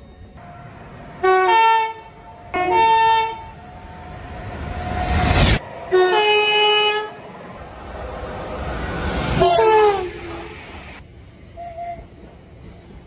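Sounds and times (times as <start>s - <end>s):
passing train roar: 0.0s - 13.0s
train air horn blasts: 1.2s - 3.6s, 5.9s - 7.2s, 9.4s - 10.7s.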